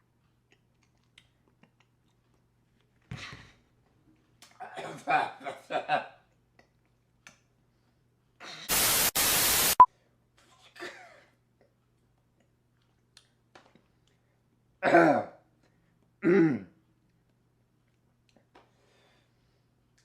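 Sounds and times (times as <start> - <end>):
person coughing: 4.6 - 5.6, 10.8 - 11.3, 14.8 - 15.4, 16.2 - 16.7
person clearing throat: 4.6 - 5.7, 14.8 - 15.4, 16.2 - 16.8.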